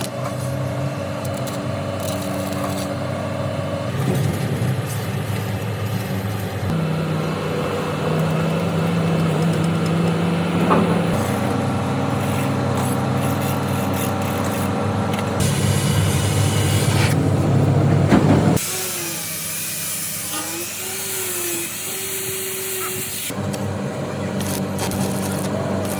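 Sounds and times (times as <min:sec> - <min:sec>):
heavy machine engine running: 0:00.0 - 0:18.8.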